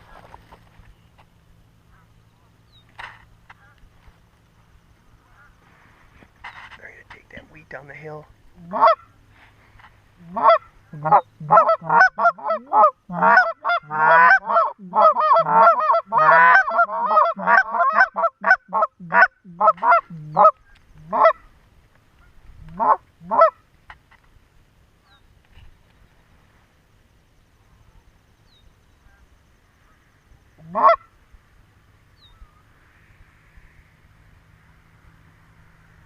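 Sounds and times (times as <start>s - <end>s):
goose honking and clucking: 5.2s - 5.7s, 8.6s - 9.2s, 10.2s - 21.5s, 22.6s - 23.6s, 30.6s - 31.1s.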